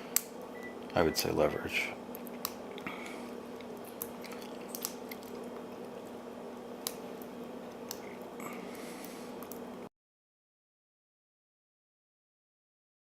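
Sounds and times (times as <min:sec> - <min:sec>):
steady low hum: 0:00.0 - 0:09.9.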